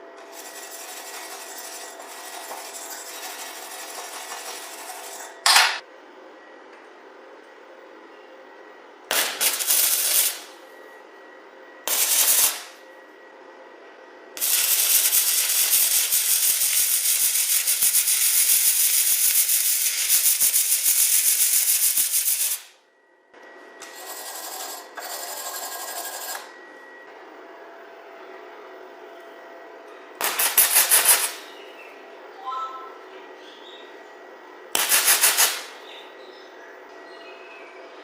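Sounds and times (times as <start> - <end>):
welding arc crackling: 9.1 - 10.5, 11.9 - 12.8, 14.4 - 22.8, 34.8 - 35.7.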